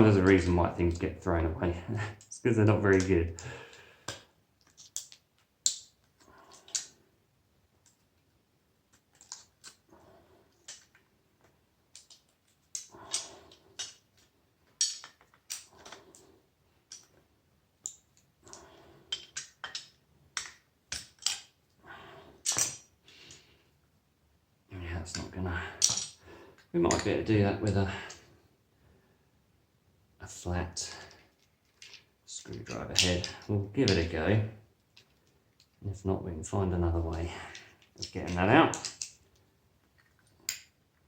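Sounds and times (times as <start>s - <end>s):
metal parts clicking and scraping: 4.1s - 7.0s, 8.9s - 17.2s, 17.8s - 21.7s, 22.4s - 23.0s, 25.1s - 27.1s, 30.8s - 34.2s, 37.0s - 41.0s.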